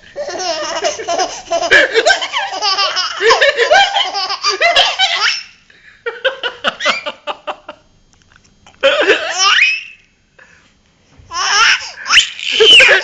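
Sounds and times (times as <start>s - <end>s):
baby laughing: 0.2s - 5.5s, 9.0s - 10.0s, 11.3s - 13.0s.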